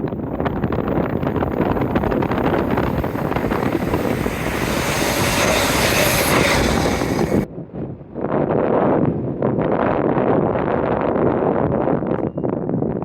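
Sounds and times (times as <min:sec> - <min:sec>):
train passing at speed: 0:00.0 - 0:07.5
wind buffeting microphone: 0:00.0 - 0:13.0.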